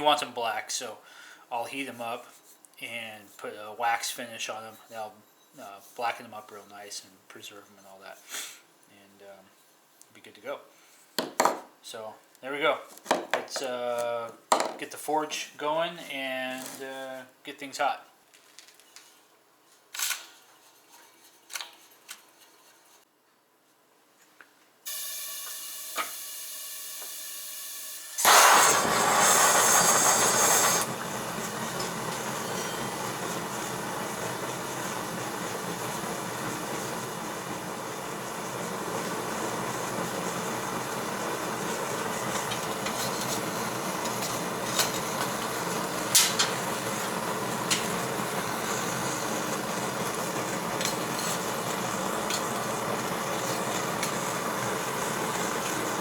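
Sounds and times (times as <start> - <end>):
blower motor humming: 28.0 - 56.0
burner hissing whoosh: 28.1 - 56.0.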